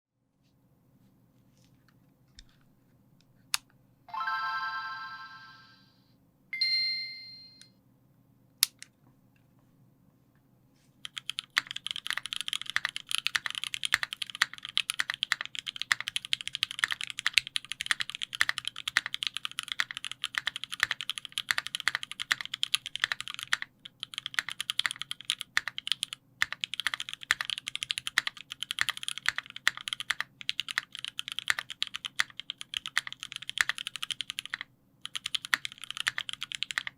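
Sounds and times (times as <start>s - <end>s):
mechanical keyboard typing: 11.0s - 36.9s.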